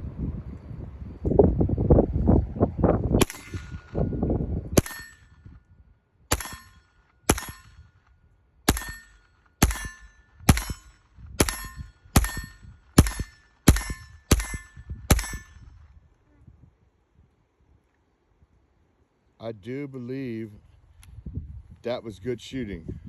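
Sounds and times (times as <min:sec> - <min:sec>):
rifle shots: 0:03.2 - 0:04.1, 0:04.8 - 0:05.4, 0:06.3 - 0:08.1, 0:08.7 - 0:15.6
steel target ringing ping: 0:03.2 - 0:05.6, 0:06.3 - 0:08.0, 0:08.7 - 0:15.7.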